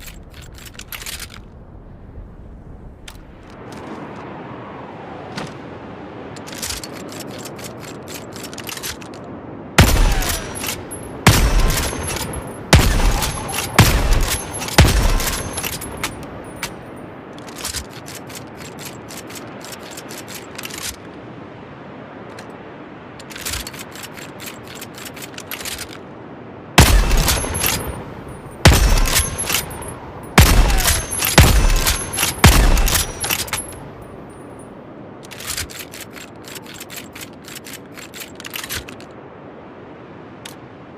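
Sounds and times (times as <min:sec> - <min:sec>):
rifle shots echoing: 0:09.8 - 0:16.0, 0:26.8 - 0:28.0, 0:28.6 - 0:29.8, 0:30.4 - 0:33.7.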